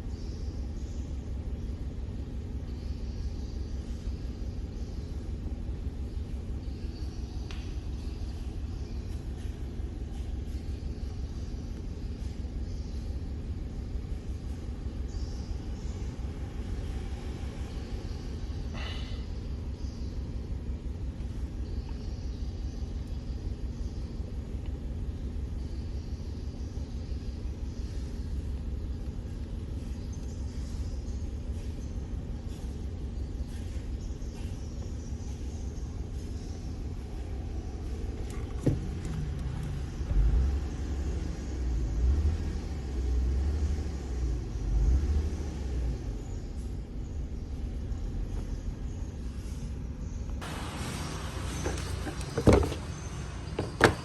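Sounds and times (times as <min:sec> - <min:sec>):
car engine idling: 0:00.0 - 0:44.9, 0:45.9 - 0:54.0
misfiring car engine rumble: 0:34.3 - 0:54.0.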